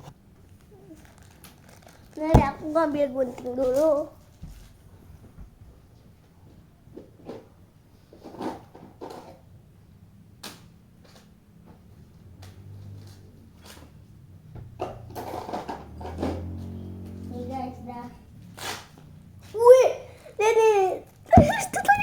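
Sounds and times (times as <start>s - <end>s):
packaging clicks and rustles: 0.5s - 2.3s.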